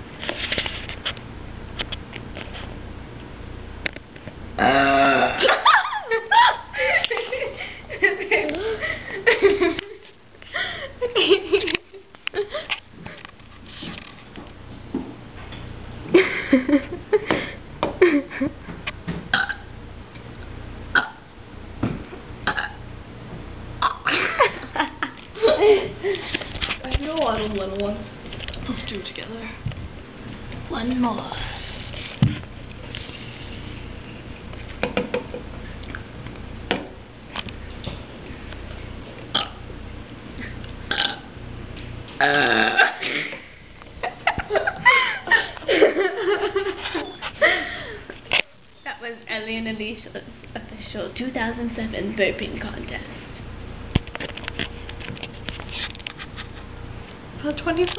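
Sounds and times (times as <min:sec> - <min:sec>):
short low burp: 0:04.6 - 0:05.4, 0:19.3 - 0:19.7, 0:20.9 - 0:21.2, 0:22.4 - 0:22.8, 0:39.3 - 0:39.6, 0:40.9 - 0:41.3, 0:42.2 - 0:43.4
person belching: 0:04.6 - 0:05.5, 0:19.3 - 0:19.7, 0:20.9 - 0:21.2, 0:22.4 - 0:22.8, 0:23.8 - 0:24.1, 0:39.3 - 0:39.6, 0:40.9 - 0:41.3, 0:42.2 - 0:43.4.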